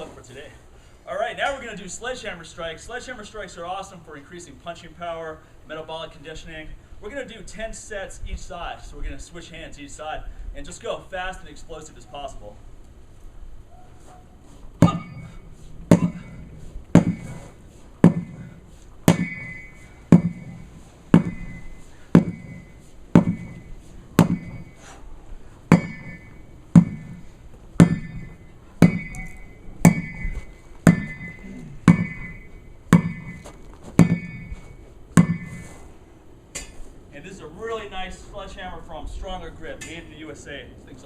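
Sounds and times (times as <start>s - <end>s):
sledgehammer striking a tire: 14.8s - 24.9s, 25.7s - 35.8s.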